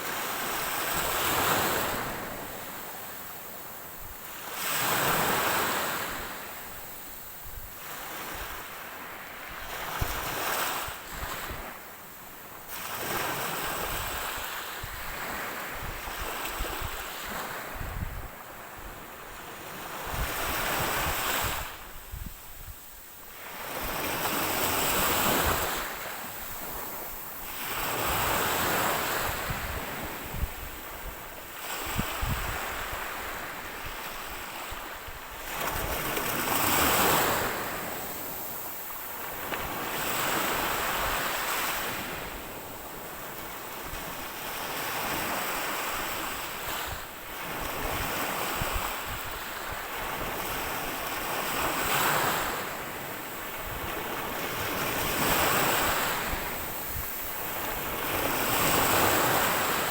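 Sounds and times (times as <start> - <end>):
wind buffeting microphone: 13.0 - 19.0, 19.6 - 23.0, 23.6 - 43.2, 43.8 - 59.9.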